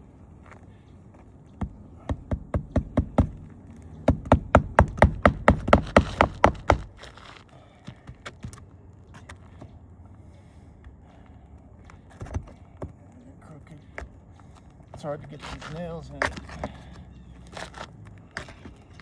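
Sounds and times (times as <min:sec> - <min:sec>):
hammer driving nails: 0:04.0 - 0:07.0.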